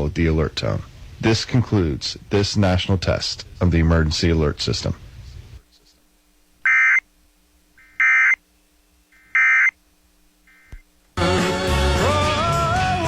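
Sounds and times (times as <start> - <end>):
music: 11.2 - 13.0.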